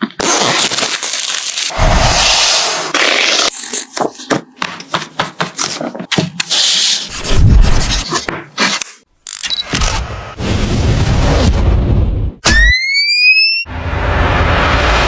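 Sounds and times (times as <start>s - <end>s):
low rumble: 13.7s - 15.0s
noisy burst: 13.7s - 15.0s.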